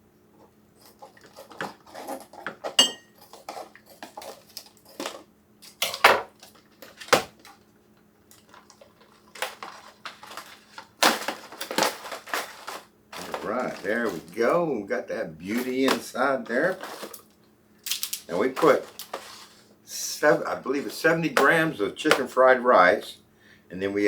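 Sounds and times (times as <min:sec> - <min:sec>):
food pouches rustling: 0:08.3 - 0:22.0.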